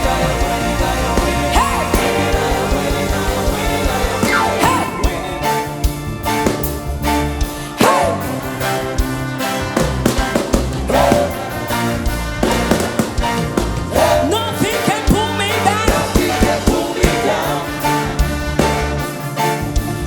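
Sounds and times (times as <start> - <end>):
people singing: 0.0 - 6.8, 7.5 - 19.7
band with drum kit: 0.0 - 20.0.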